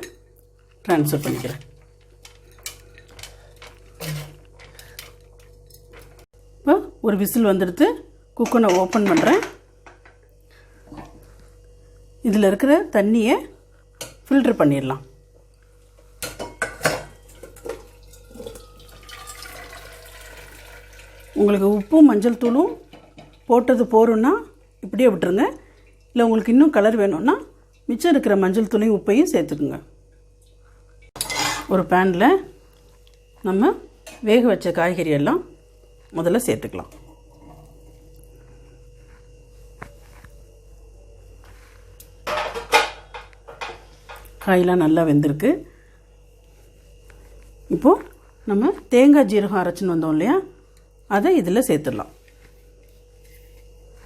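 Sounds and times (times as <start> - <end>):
faint steady hum: 0.0 - 54.0
water pouring: 17.8 - 22.0.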